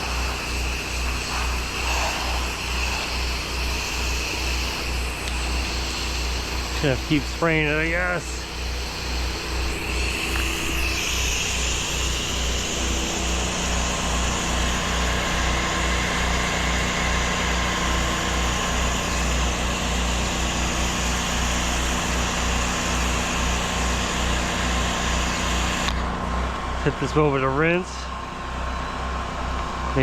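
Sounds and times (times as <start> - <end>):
water spraying hiss: 0.0 - 25.9
pressure washer engine throb: 0.0 - 30.0.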